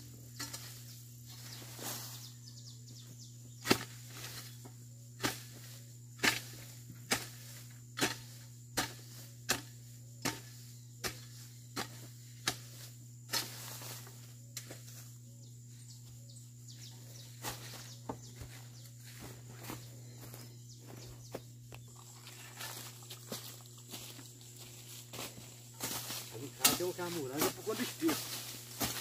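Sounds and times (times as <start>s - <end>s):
hand hoe chopping soil: 3.6s - 4.6s, 5.2s - 14.0s, 25.8s - 29.0s.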